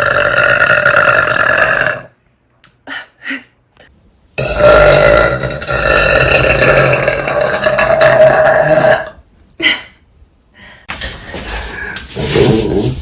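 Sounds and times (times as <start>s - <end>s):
woman burping: 4.4s - 9.9s.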